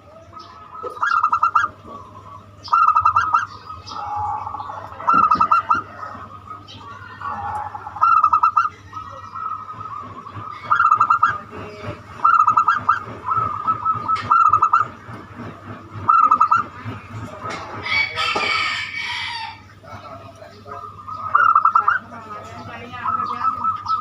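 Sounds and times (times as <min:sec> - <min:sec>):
dove cooing song: 0:00.0 - 0:24.0
rooster crowing: 0:02.8 - 0:06.5, 0:17.5 - 0:19.7.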